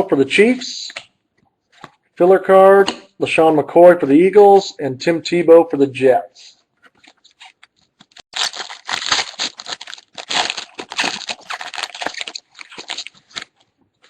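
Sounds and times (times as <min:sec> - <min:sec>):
wrapper crinkling and tearing: 0:07.0 - 0:14.0.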